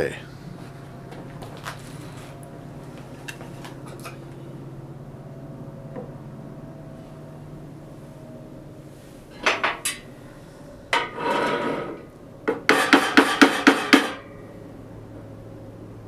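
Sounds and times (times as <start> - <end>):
scraping rub: 11.0 - 12.0.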